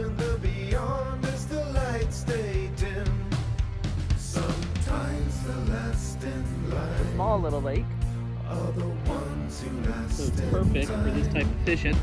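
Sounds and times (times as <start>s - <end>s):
person singing: 0.0s - 3.4s, 4.2s - 7.2s, 8.4s - 11.6s
guitar: 0.0s - 12.0s
drum beat: 10.6s - 12.0s.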